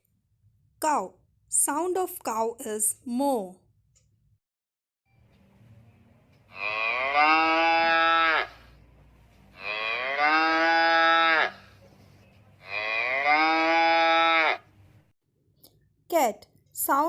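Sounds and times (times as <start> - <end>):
cow mooing: 6.5 - 8.8, 9.6 - 11.7, 12.6 - 14.7.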